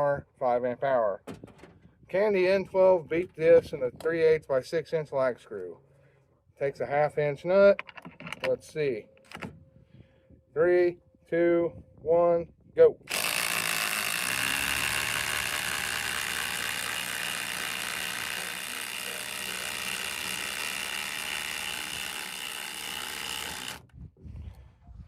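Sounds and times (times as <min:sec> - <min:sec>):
impact driver hammering: 0:13.1 - 0:23.8.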